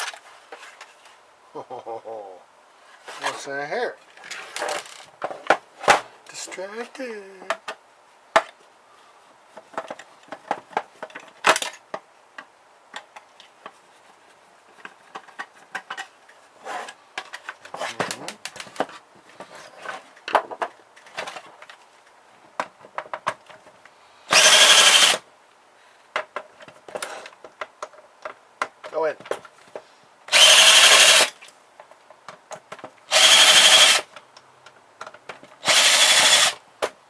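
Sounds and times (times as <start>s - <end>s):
small plastic and metal parts clattering: 4.0s - 5.6s
power drill burst: 24.3s - 25.2s, 30.3s - 31.4s, 33.1s - 34.1s, 35.6s - 36.6s.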